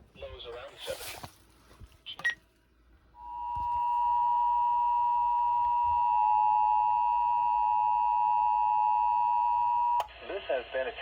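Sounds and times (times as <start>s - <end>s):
steady high alarm tone: 3.2s - 10.0s.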